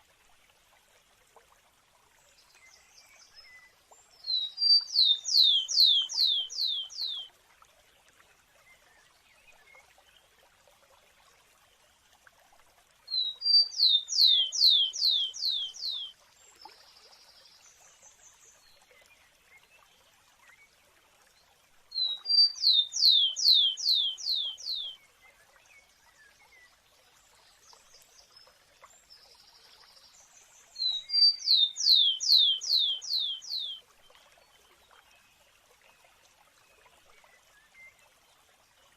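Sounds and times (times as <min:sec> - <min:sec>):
sparrow singing whistles: 0:30.8 - 0:33.8.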